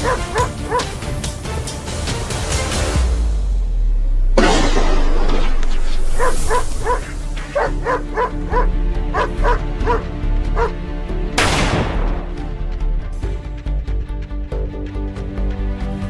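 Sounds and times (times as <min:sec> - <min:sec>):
dogs barking: 0:00.0 - 0:01.2, 0:06.0 - 0:10.8
background music: 0:00.0 - 0:16.0
sharp bang: 0:04.4 - 0:06.4.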